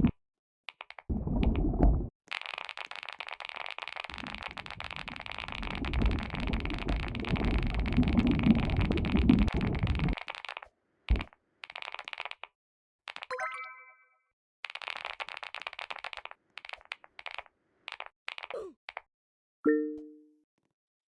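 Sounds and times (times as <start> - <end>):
fast typing on keyboard: 2.3 - 12.5, 13.1 - 13.3, 14.6 - 19.0.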